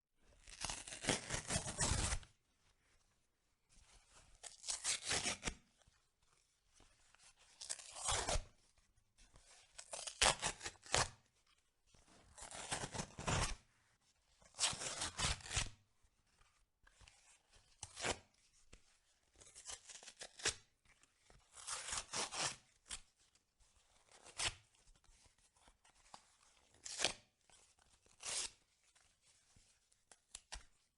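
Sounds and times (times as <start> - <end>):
cardboard tearing: 0.4 - 2.2.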